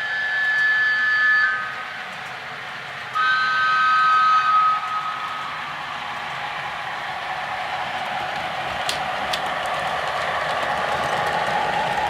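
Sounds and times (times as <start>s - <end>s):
two-tone model train horn: 0.0s - 1.9s, 3.2s - 5.4s.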